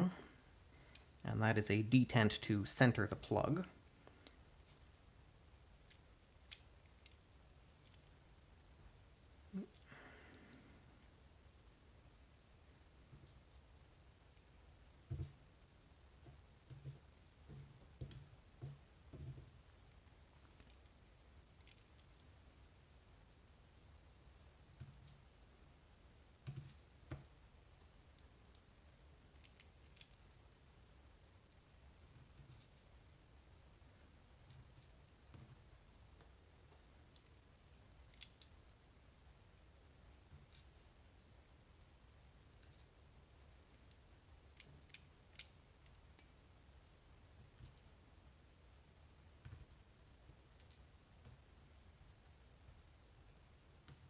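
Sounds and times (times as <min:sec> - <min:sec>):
low steady hum: 0:00.0 - 0:54.0
light clicks of small parts: 0:00.1 - 0:01.2, 0:05.8 - 0:08.2, 0:16.2 - 0:24.1, 0:29.3 - 0:30.5, 0:31.2 - 0:32.9, 0:34.4 - 0:37.4, 0:38.0 - 0:38.8, 0:39.5 - 0:40.9, 0:42.4 - 0:43.2, 0:43.8 - 0:48.6, 0:49.4 - 0:51.5.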